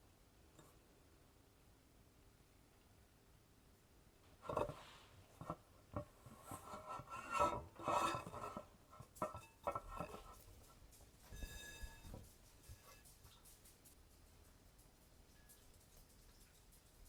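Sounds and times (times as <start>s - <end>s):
food preparation scraping: 4.4s - 13.1s.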